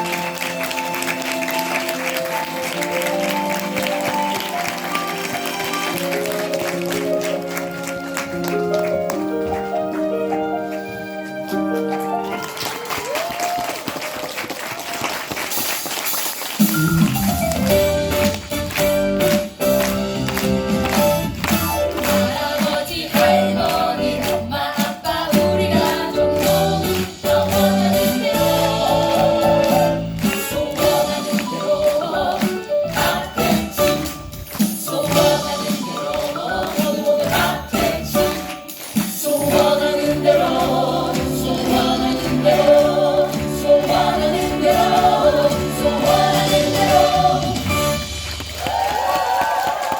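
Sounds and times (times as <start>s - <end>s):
band accompaniment with beat: 15.3s - 49.9s
ensemble singing upbeat song: 21.8s - 48.1s.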